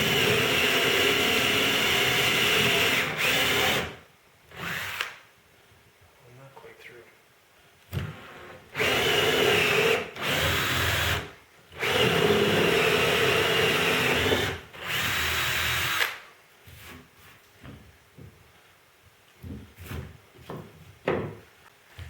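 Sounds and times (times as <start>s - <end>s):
power drill boring wood: 0.0s - 5.2s, 8.0s - 16.2s.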